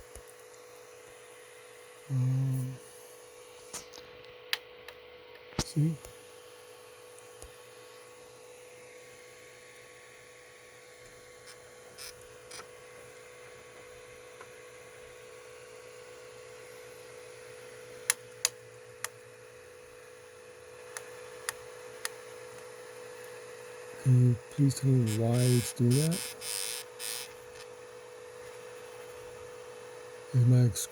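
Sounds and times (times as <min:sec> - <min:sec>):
printer humming: 0:24.1 - 0:27.6.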